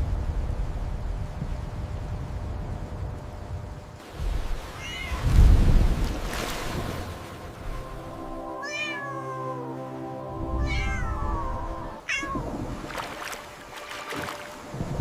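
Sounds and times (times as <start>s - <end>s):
cat meowing: 4.8s - 5.2s, 8.6s - 9.6s, 10.6s - 12.5s
soft held music chord: 7.1s - 12.1s.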